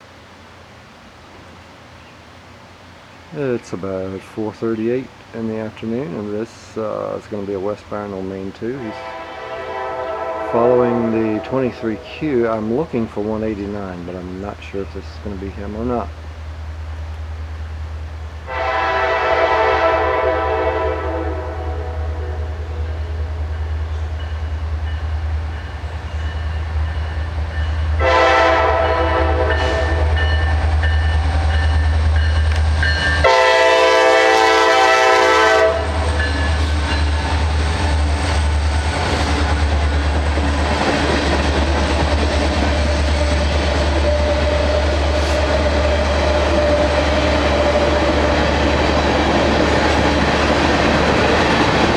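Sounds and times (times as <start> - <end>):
low engine rumble: 0.0 - 19.2
train horn blasts: 8.7 - 12.9, 18.5 - 31.2, 33.0 - 36.7.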